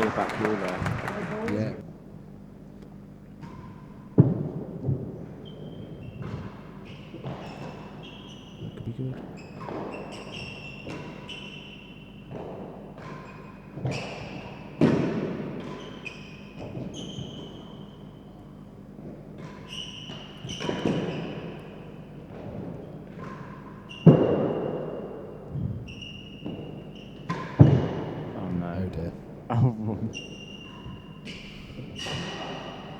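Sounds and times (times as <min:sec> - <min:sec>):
shoe squeaks: 0:05.4 - 0:12.2, 0:15.8 - 0:18.3, 0:19.6 - 0:22.0, 0:25.9 - 0:27.5, 0:30.1 - 0:32.9.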